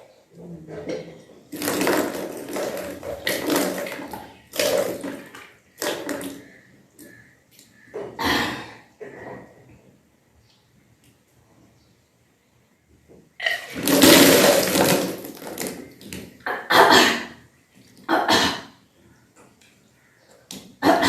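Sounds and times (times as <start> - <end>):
water splashing out: 1.5 - 6.6, 13.4 - 16.2
person vomiting water: 1.6 - 7.2, 8.1 - 9.0, 13.4 - 18.8, 20.8 - 21.0.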